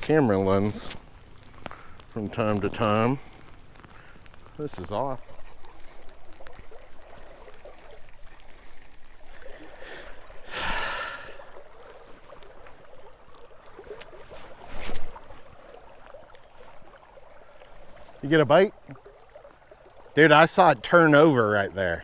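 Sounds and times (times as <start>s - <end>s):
rain pattering on water: 0.0s - 22.0s
breathy exhale: 9.4s - 11.6s.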